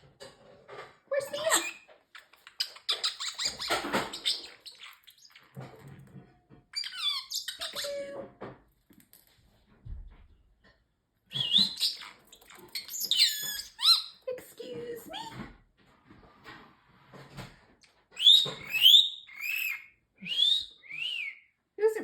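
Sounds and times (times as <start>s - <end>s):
parrotlet chirping and squawking: 1.2s - 5.8s, 6.7s - 8.1s, 11.3s - 14.2s, 18.2s - 20.0s.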